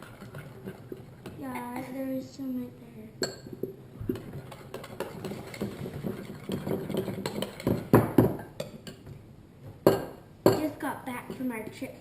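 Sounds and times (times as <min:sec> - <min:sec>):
slime squelching in a bowl: 0:00.0 - 0:09.0.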